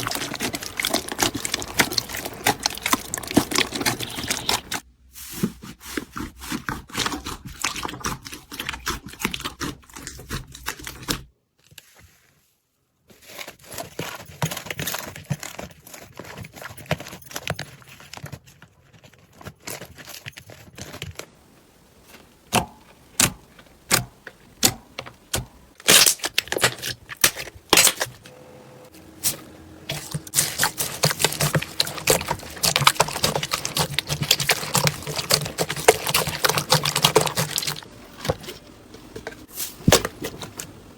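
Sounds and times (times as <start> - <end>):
slime crackling and popping: 0.0 - 4.8, 22.0 - 28.1, 29.9 - 38.3.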